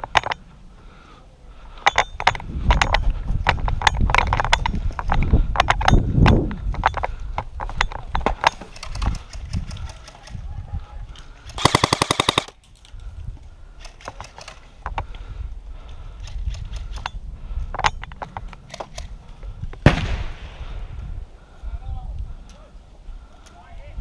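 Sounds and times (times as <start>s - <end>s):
sharp cracks and clicks: 11.5s - 13.0s
airsoft gun full-auto burst: 11.6s - 12.5s.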